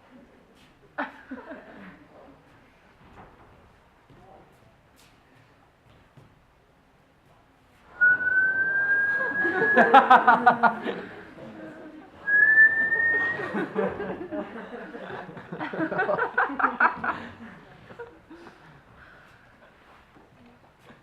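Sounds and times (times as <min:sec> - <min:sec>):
voices and laughter: 0:00.8 - 0:02.3, 0:08.8 - 0:20.0
person whistling long note: 0:07.9 - 0:10.2, 0:12.2 - 0:13.6.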